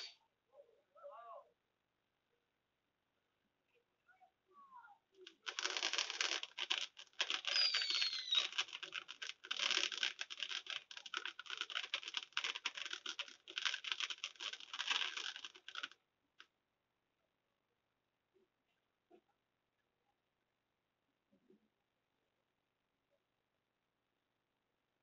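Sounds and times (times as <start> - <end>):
fireworks crackling pops: 5.2 - 16.0
falling whistle: 7.5 - 8.5.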